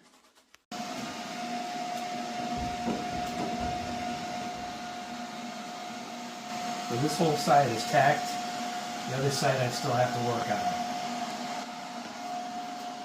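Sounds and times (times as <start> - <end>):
machine hum with whine: 0.8 - 7.2.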